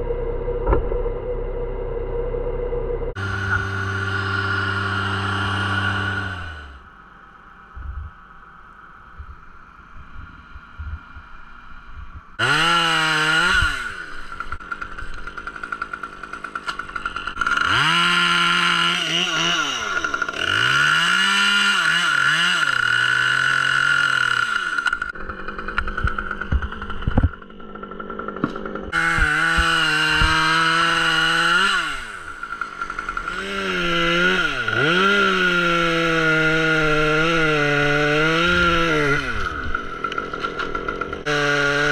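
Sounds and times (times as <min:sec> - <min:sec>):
two-stroke chainsaw revving: 0:03.2 - 0:06.9, 0:12.4 - 0:41.9.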